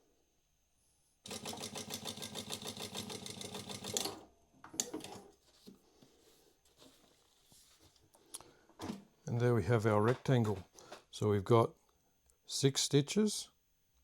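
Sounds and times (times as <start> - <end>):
sewing machine stitching: 1.3 - 4.2.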